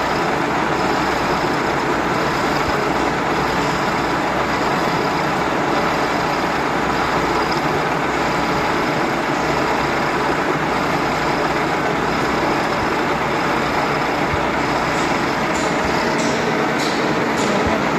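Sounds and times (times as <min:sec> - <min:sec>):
milling machine running: 0:00.0 - 0:17.9.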